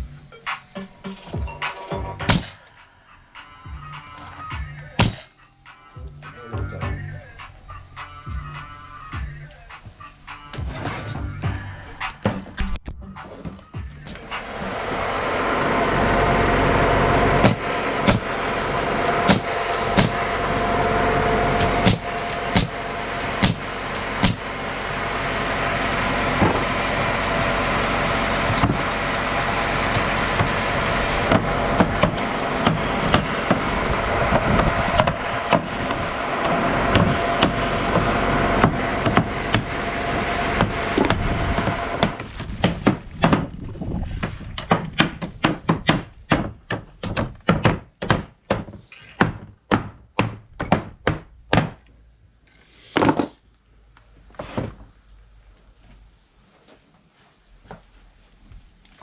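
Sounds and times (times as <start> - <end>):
heavy machinery engine running: 1.0 - 5.3, 14.0 - 43.1
sharp knocks and clanks: 1.3 - 2.7, 5.0 - 5.3, 17.2 - 18.4, 19.0 - 20.2, 21.5 - 24.6, 28.4 - 29.0, 29.9 - 33.7, 35.0 - 39.8, 44.2 - 51.8.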